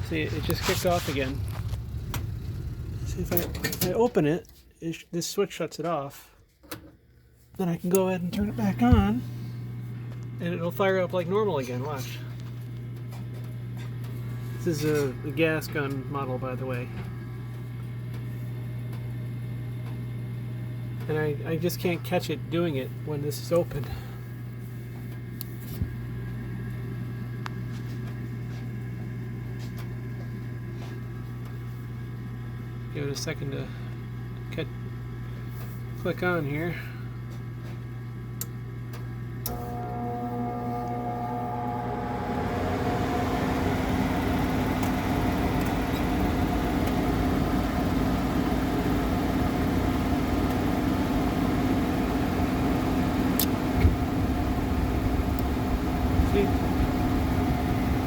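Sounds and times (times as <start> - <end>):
oil burner roaring: 0.0 - 4.3, 7.1 - 28.2, 29.0 - 58.0
furnace humming: 0.0 - 58.0
small click: 38.4 - 39.6, 53.4 - 53.6
sharp click: 53.4 - 53.6.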